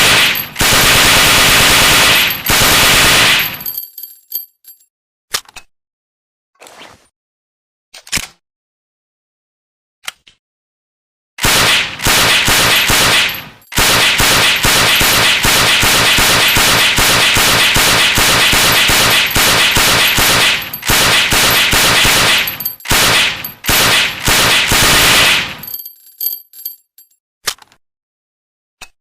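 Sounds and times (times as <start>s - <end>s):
submachine gun automatic bursts: 0.0s - 3.8s, 11.4s - 25.7s.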